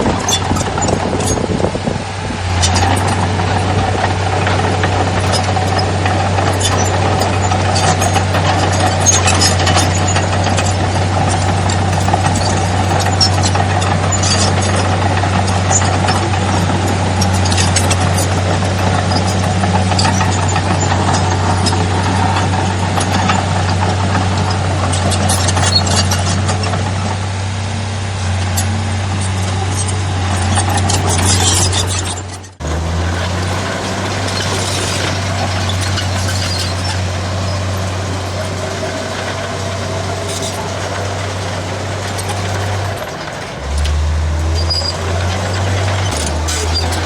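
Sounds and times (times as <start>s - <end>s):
heavy diesel engine running: 0.0s - 47.0s
metallic clanks and knocks: 30.8s - 47.0s.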